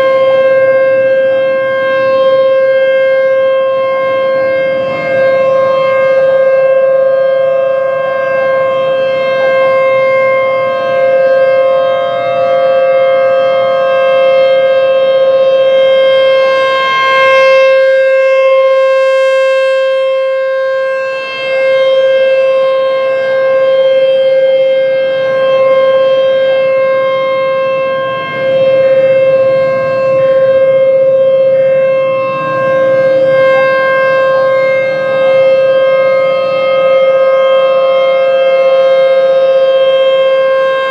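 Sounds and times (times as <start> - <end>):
rotating warning siren: 0.0 - 40.9.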